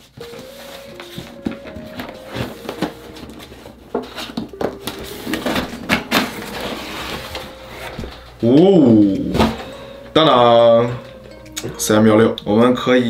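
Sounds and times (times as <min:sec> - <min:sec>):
cardboard and wrapping rustling: 0:00.0 - 0:10.5.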